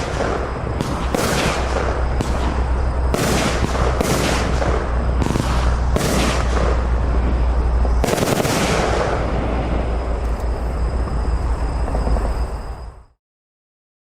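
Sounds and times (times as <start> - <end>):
fireworks shots and crackling: 0.0 - 10.3
sharp loud firework reports: 0.0 - 12.8
low rumble: 0.0 - 13.2.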